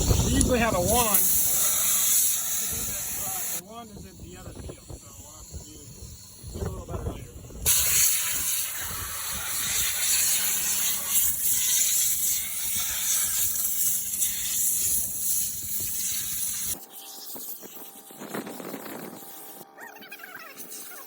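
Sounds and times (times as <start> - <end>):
compressed air hissing from hose: 0.0 - 6.6, 7.5 - 19.6.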